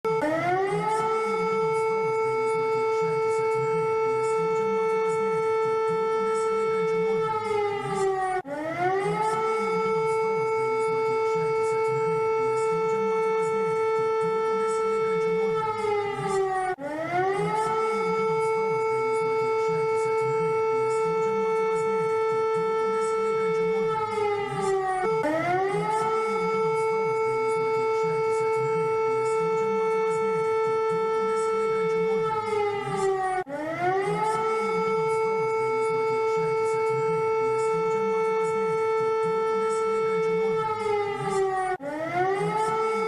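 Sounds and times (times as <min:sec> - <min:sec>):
warning siren: 0:00.0 - 0:43.0.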